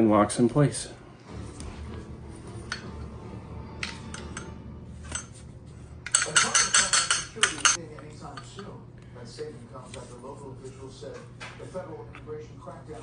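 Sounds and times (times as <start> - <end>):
metal hardware clicking and clinking: 3.8 - 5.4, 6.0 - 7.8.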